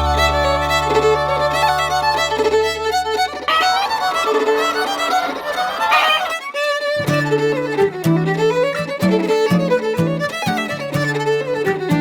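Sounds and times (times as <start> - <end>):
held low bass note: 0.0 - 3.4
fiddle melody: 0.0 - 12.0.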